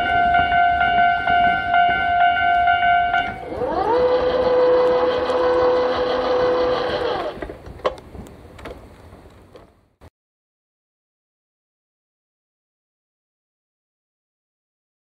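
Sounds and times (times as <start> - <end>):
barrier motor whining: 0.0 - 7.6.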